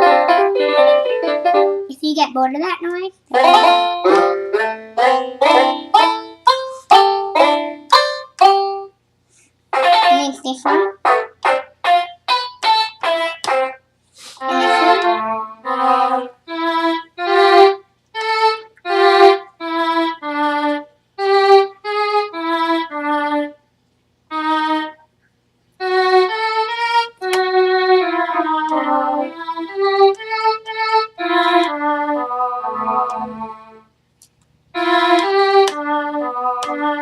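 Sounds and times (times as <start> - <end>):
electronic keyboard violin melody: 0.0 - 1.9, 3.3 - 8.9, 9.8 - 13.8, 14.4 - 23.6, 24.3 - 25.0, 25.8 - 33.9, 34.8 - 37.0.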